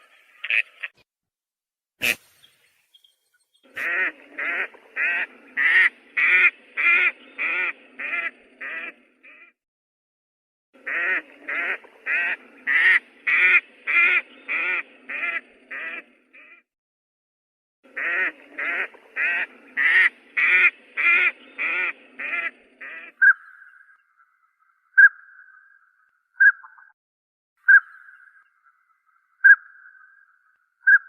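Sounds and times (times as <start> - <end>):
duck quacking rapidly: 2.0 - 2.2, 3.8 - 9.6.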